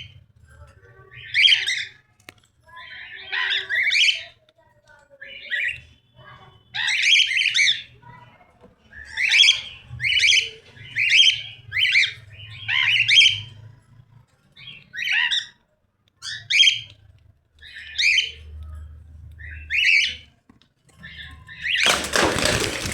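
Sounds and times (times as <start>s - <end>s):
crackling noise: 21.8s - 22.9s.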